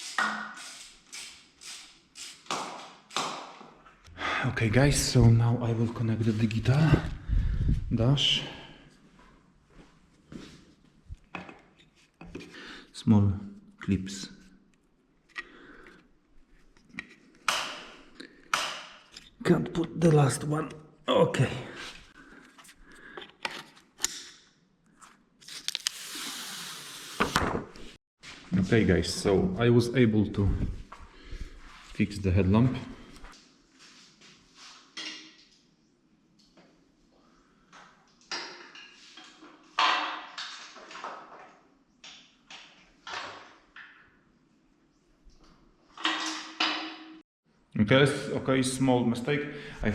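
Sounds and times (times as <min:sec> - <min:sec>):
clattering of parts and tools: 0:37.7 - 0:44.1, 0:45.9 - 0:47.2.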